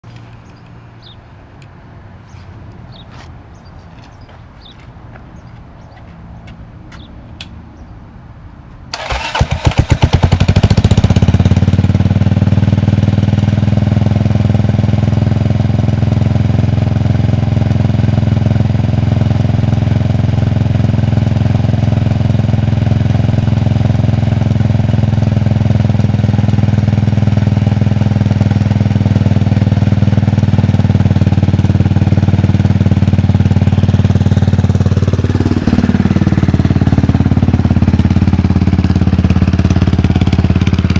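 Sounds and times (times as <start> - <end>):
engine cranking: 8.9 - 10.4
engine clicking noise: 8.9 - 11.0
motorcycle engine idling: 9.0 - 40.9.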